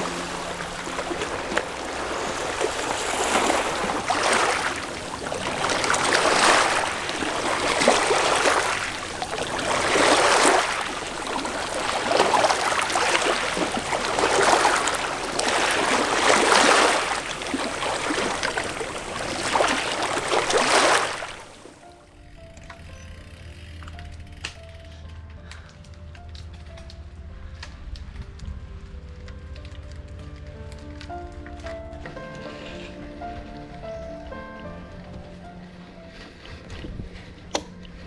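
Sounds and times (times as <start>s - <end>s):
sea waves washing against shore: 0.0s - 21.9s.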